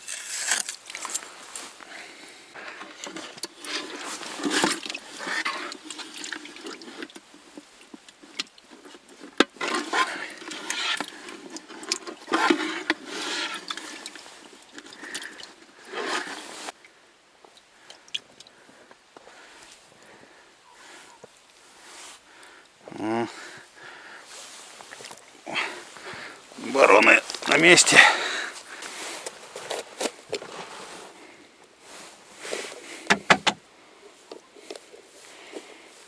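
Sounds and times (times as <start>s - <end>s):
water and slush splashing: 3.0s - 7.2s, 9.6s - 16.8s.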